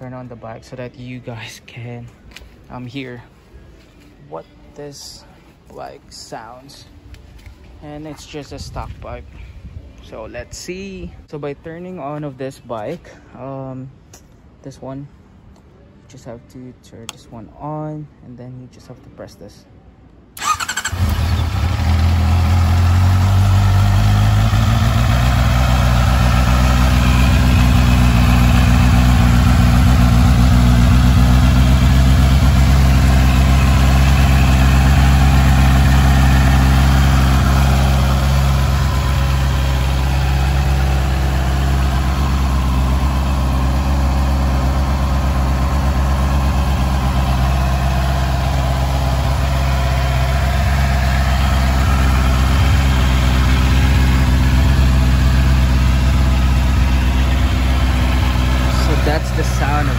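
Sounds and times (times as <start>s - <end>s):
motorcycle engine idling: 20.4s - 59.9s.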